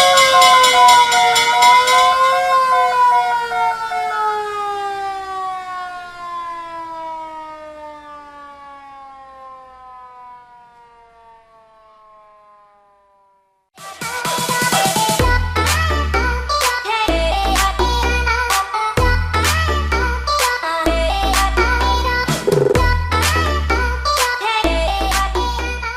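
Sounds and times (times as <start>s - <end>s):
fire bell ringing rapidly: 0.0s - 3.1s
fire engine siren wailing: 0.0s - 17.1s.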